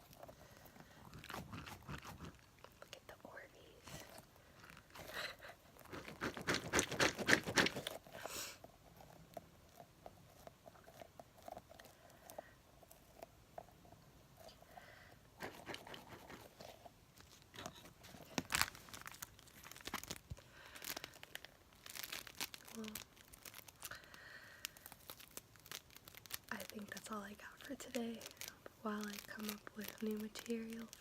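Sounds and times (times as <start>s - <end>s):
hands squeezing water beads: 4.2s - 8.6s, 15.4s - 31.0s.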